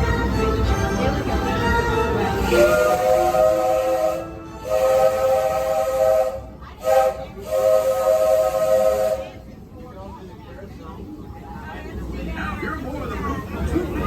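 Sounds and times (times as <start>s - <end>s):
steam whistle blasts: 2.4s - 9.4s.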